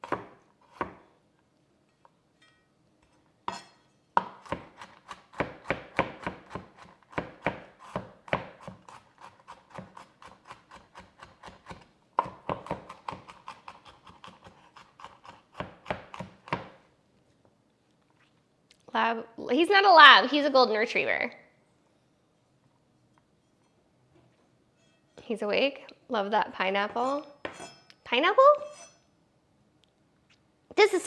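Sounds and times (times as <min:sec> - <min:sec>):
knife chopping on cutting board: 0:00.0 - 0:01.0, 0:03.5 - 0:16.8.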